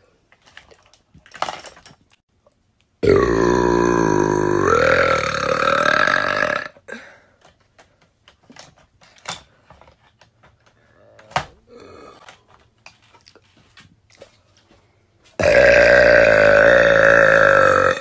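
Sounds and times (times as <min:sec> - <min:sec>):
woman burping: 0:03.0 - 0:07.1, 0:15.4 - 0:18.0.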